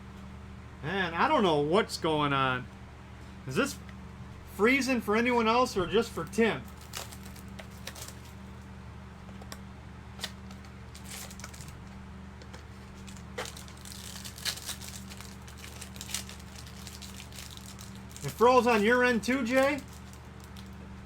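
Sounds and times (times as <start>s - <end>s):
low electrical hum: 0.0s - 21.0s
packaging rustling and crinkling: 6.6s - 8.5s, 10.2s - 20.8s.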